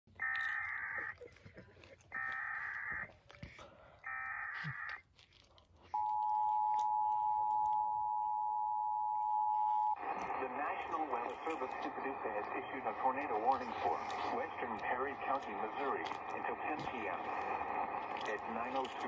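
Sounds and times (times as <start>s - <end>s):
two-tone attention signal: 6.0s - 10.0s.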